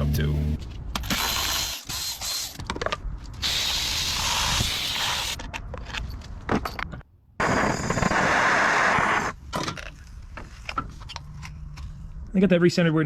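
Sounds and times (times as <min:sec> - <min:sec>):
hissing spray: 0:03.4 - 0:05.4.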